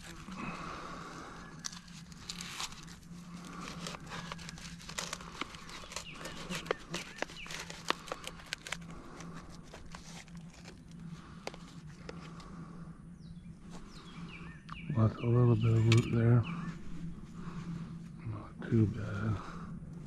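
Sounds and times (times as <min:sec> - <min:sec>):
plastic pot crinkling: 0:00.0 - 0:12.5
faint low hum: 0:00.0 - 0:20.0.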